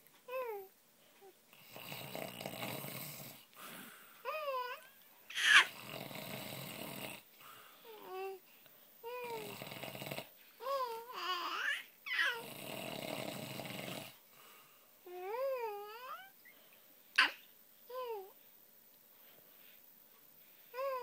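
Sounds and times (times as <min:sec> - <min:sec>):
baby babbling and cooing: 0:00.3 - 0:01.4, 0:04.3 - 0:05.8, 0:07.9 - 0:08.4, 0:09.0 - 0:09.5, 0:10.6 - 0:12.4, 0:15.1 - 0:16.5, 0:17.2 - 0:18.4, 0:20.8 - 0:21.0
man snoring: 0:01.6 - 0:03.4, 0:05.6 - 0:07.3, 0:09.2 - 0:10.3, 0:12.2 - 0:14.2
baby squealing: 0:05.3 - 0:05.7.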